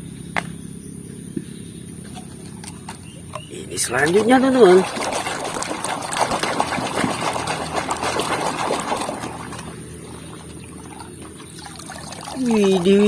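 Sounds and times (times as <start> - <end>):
water pouring and splashing: 3.7 - 13.0.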